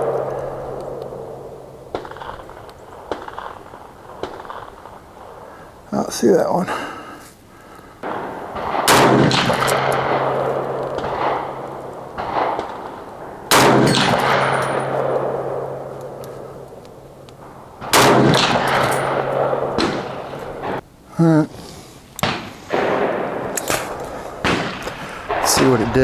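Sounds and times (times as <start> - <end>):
rifle shots echoing: 0.0 - 26.0.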